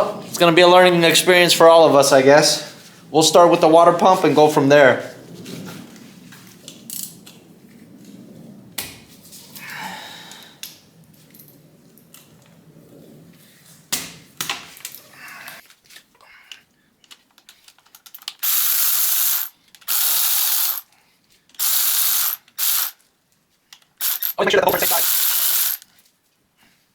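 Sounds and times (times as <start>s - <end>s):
power wrench running: 18.3s - 20.9s, 21.6s - 23.0s, 24.0s - 25.8s.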